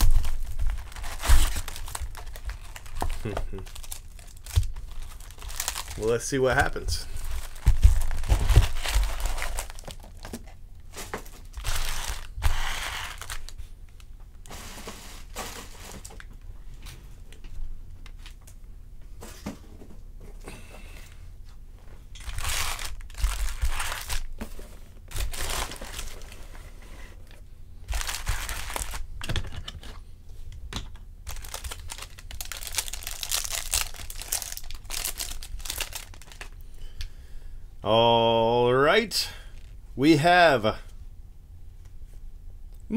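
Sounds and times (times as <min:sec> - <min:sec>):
foil wrappers tearing and crinkling: 0:00.0 - 0:13.6, 0:22.2 - 0:24.4, 0:25.1 - 0:26.4, 0:27.9 - 0:29.1, 0:31.2 - 0:36.6.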